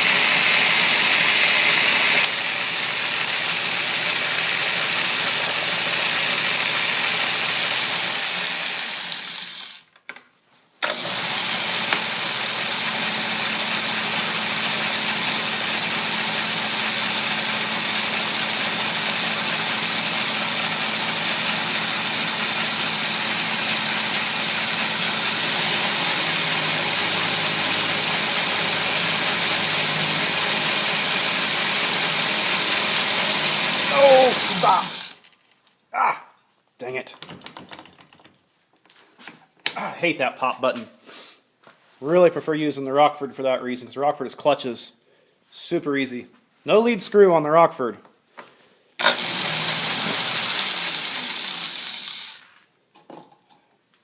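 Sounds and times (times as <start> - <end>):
metal lathe milling: 0.0 - 9.8, 10.8 - 35.1, 49.0 - 52.4.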